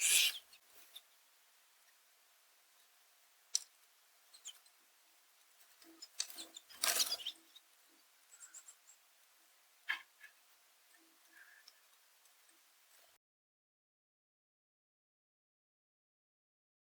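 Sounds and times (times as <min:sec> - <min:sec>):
faint high bird chirps: 0:00.0 - 0:01.2, 0:04.2 - 0:04.8, 0:05.9 - 0:09.0
birds clicking and tapping: 0:02.7 - 0:13.2.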